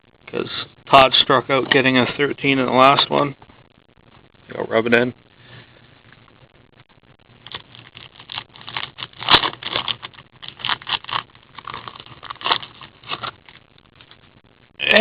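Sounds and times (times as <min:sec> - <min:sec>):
packaging crinkling and tearing: 0:07.4 - 0:14.2.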